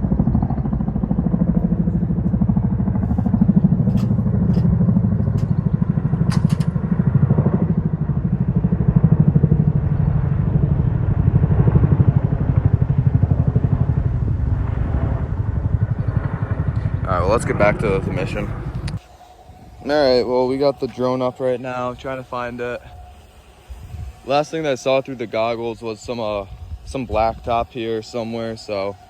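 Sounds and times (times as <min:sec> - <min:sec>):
helicopter rotor beating: 0:00.0 - 0:29.0.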